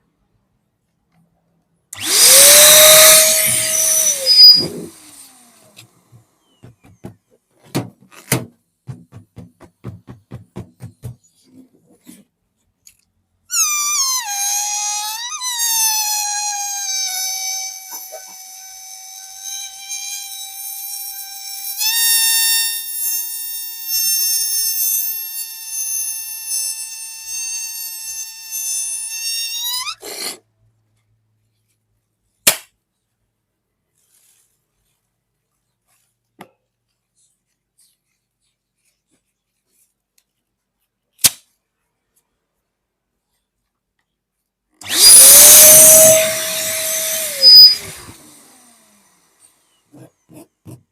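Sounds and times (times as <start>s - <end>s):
air squealing from balloon neck: 2.0s - 5.4s, 13.5s - 30.4s, 44.8s - 48.2s.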